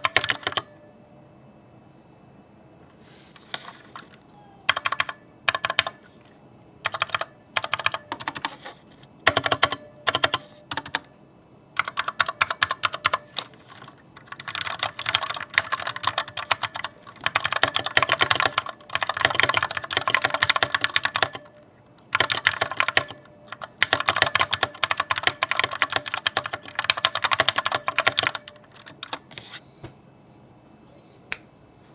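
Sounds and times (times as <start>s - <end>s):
mechanical keyboard typing: 0.0s - 0.8s, 3.5s - 6.1s, 6.8s - 11.1s, 11.8s - 29.4s.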